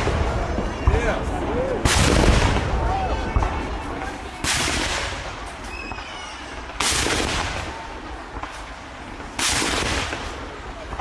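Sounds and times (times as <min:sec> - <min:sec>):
cannon blasts with long echo: 0:01.8 - 0:03.7, 0:09.2 - 0:11.0.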